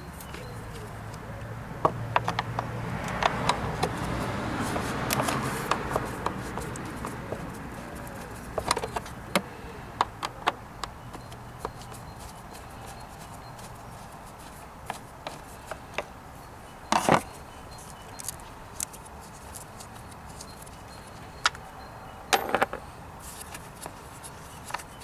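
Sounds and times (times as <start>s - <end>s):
tool clicks and knocks: 1.8s - 11.8s.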